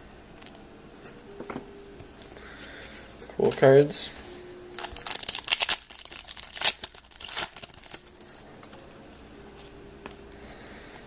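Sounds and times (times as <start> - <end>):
faint room noise: 0.0 - 11.0
wrapper crinkling and tearing: 4.7 - 8.4.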